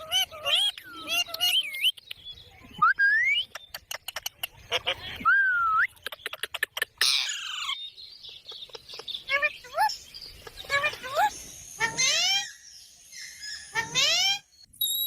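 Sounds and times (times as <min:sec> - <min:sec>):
parrot chattering calls: 0:06.3 - 0:07.8
parrot harsh squawk: 0:07.0 - 0:07.8.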